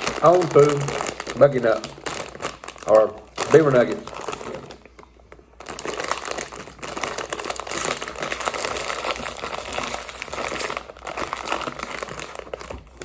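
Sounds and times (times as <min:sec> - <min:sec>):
plastic snack bag crinkling: 0:00.0 - 0:13.0.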